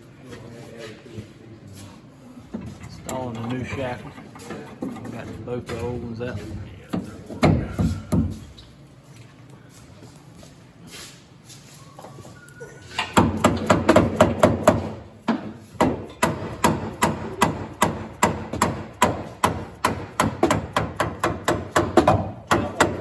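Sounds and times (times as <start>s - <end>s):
rapid hammer blows on metal: 15.8s - 23.0s.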